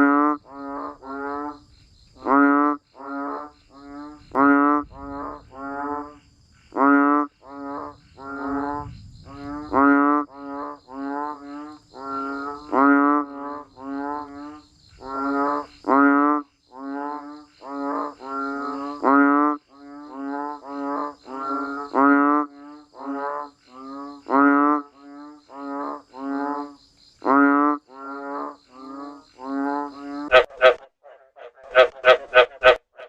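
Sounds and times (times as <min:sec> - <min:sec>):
insects chirring: 0:00.0 - 0:30.8
frogs croaking: 0:00.0 - 0:33.0.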